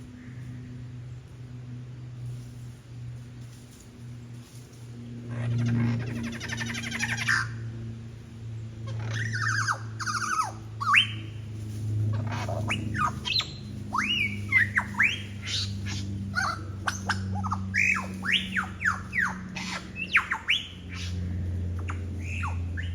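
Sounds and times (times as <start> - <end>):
lyrebird mimicking bird calls: 8.8 - 11.2, 12.1 - 22.9.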